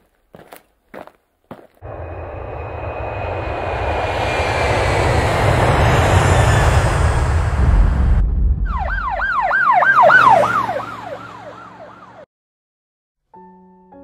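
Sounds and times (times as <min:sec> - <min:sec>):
jet aircraft noise: 0:01.8 - 0:11.4
siren yelping: 0:08.7 - 0:12.3.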